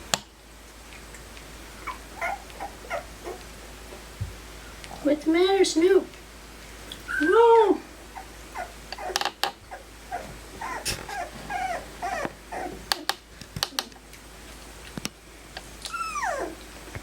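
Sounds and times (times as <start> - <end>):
puppies whimpering: 1.7 - 3.5, 7.0 - 13.1, 15.8 - 16.7.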